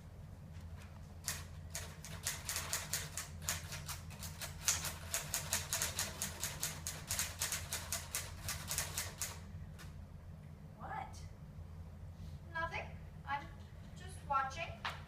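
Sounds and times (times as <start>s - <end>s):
typewriter keys clacking: 1.2s - 9.4s.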